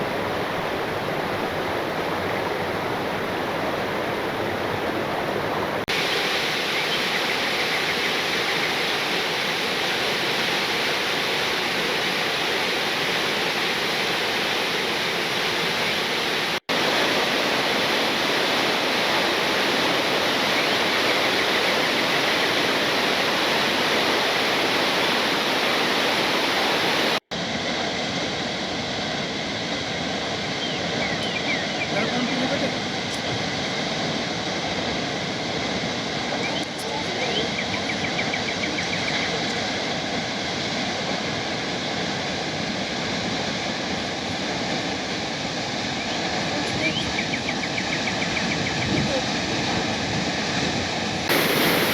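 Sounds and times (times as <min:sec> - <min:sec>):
waterfall rushing: 0:00.0 - 0:27.6, 0:49.3 - 0:51.9.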